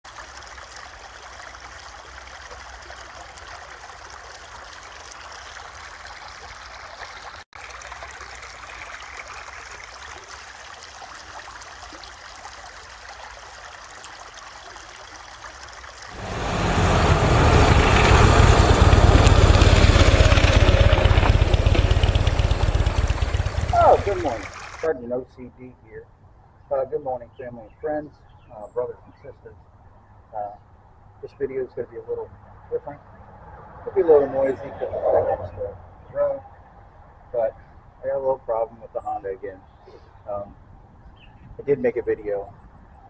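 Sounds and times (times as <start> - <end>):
roadside traffic hiss: 16.2 - 24.9
vehicle rushing past: 16.2 - 24.9, 33.2 - 36.0.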